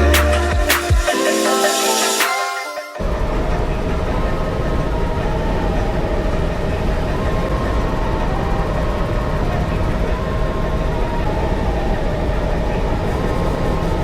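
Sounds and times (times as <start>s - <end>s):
music: 0.0s - 3.0s.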